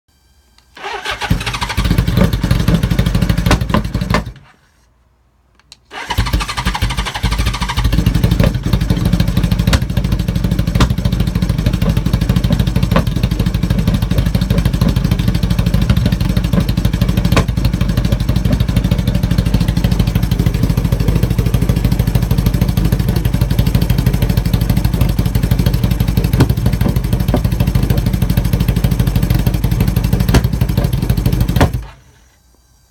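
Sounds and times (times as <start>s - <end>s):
motorcycle engine idling roughly: 1.0s - 4.4s, 6.0s - 32.0s.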